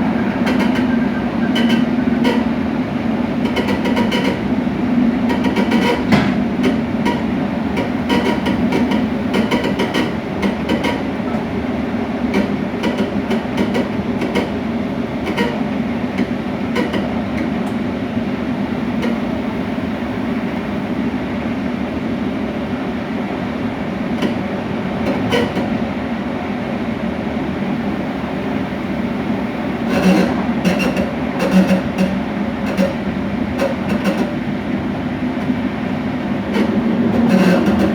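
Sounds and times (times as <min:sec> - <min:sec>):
train rumbling: 0:00.0 - 0:37.9
coupling clicks and knocks: 0:03.4 - 0:04.5, 0:05.3 - 0:11.5, 0:29.9 - 0:34.5.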